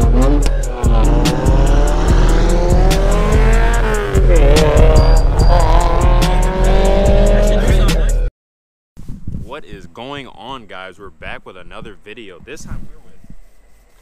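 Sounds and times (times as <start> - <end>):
car engine accelerating: 0.0 - 8.3
instrumental hip-hop beat: 0.0 - 8.3.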